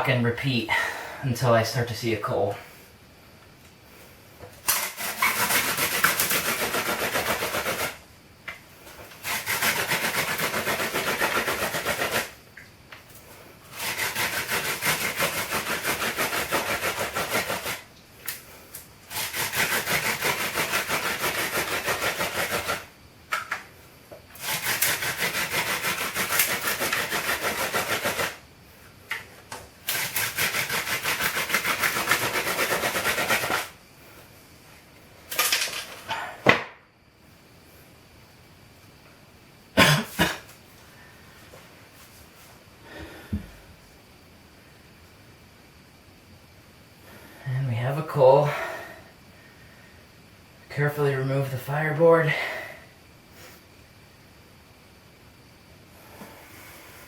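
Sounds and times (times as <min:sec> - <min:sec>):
wooden spindle grinding on fireboard: 0:04.6 - 0:08.0, 0:09.2 - 0:12.4, 0:13.7 - 0:17.9, 0:19.1 - 0:22.9, 0:24.4 - 0:28.4, 0:29.8 - 0:33.8.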